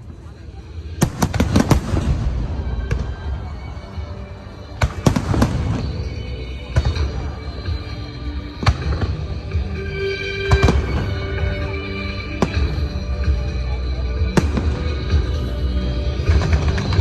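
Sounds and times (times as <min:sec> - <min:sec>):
fireworks bangs: 0:01.0 - 0:04.0, 0:04.7 - 0:07.4
music of held notes: 0:01.0 - 0:17.0.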